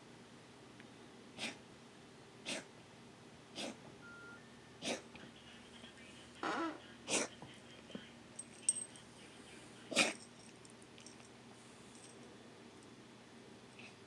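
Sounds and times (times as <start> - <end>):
pet coughing: 1.4 - 1.6, 2.4 - 2.7, 3.6 - 3.8, 4.8 - 5.6, 6.2 - 8.1, 8.7 - 10.3.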